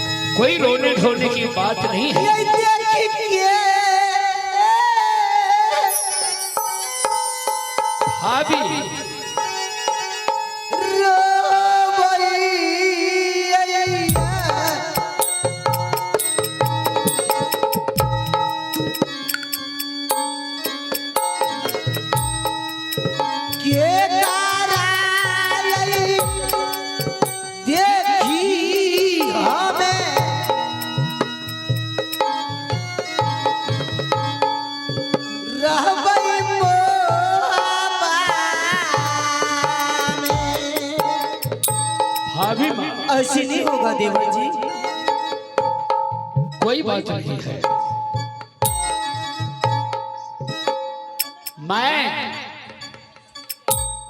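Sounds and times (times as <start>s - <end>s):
hand drum strokes: 14.1s - 32.4s
wavering melody with vibrato: 14.1s - 36.7s, 38.8s - 46.1s, 48.6s - 54.0s.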